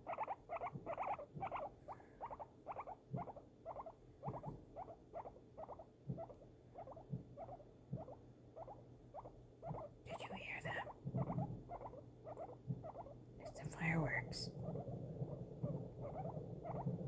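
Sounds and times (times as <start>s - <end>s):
guinea pig squeaking: 0.0s - 17.0s.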